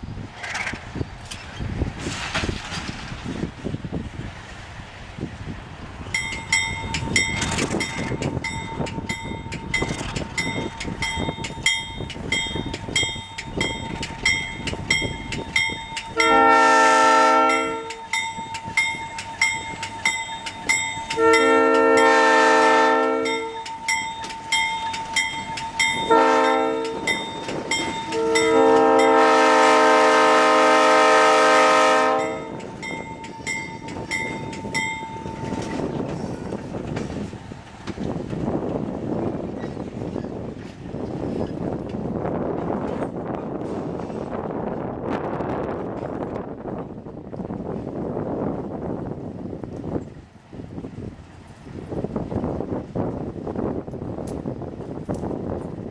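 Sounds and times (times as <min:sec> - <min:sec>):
passing train rumble: 0:00.0 - 0:55.9
locomotive air horn blasts: 0:16.2 - 0:18.2, 0:21.1 - 0:23.6, 0:25.9 - 0:27.2, 0:28.0 - 0:32.6
bell ringing: 0:23.3 - 0:26.1.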